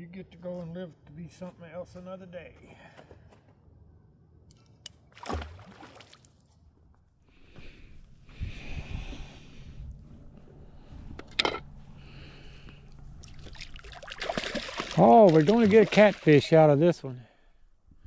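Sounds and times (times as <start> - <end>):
sharp water splash: 5.1 - 6.4, 13.2 - 16.5
water sloshing: 5.2 - 6.5, 13.0 - 16.7.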